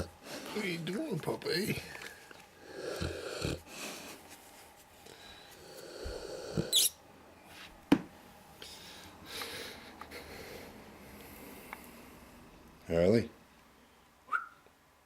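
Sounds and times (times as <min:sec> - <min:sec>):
dog snoring and snorting: 0:02.6 - 0:03.8.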